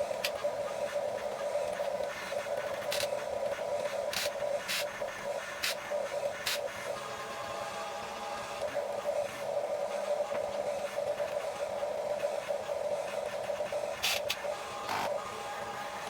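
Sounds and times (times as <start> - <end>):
small electric motors whirring: 1.7 - 4.9, 13.9 - 16.0.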